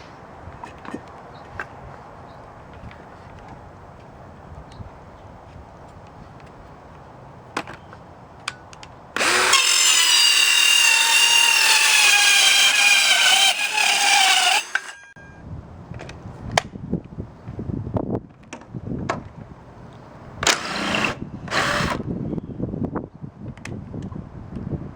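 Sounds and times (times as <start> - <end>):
cordless drill motor whining: 9.2 - 15.0.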